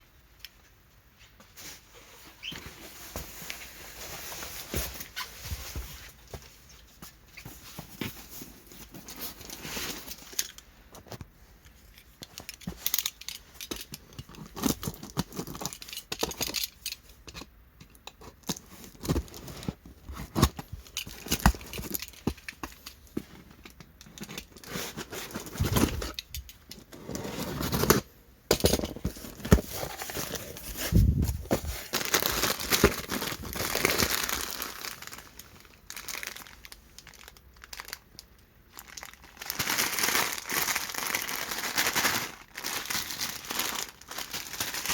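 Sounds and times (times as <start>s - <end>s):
packaging crinkling and tearing: 12.2s - 16.9s, 18.3s - 23.1s, 29.1s - 44.9s.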